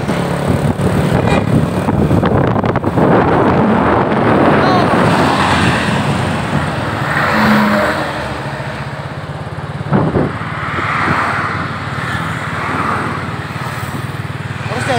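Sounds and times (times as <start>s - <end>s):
road traffic passing: 0.0s - 14.9s.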